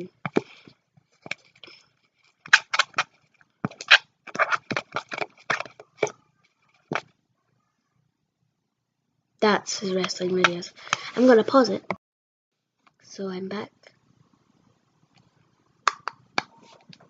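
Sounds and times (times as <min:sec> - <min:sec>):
utensil stirring slime in bowl: 0:00.1 - 0:06.2.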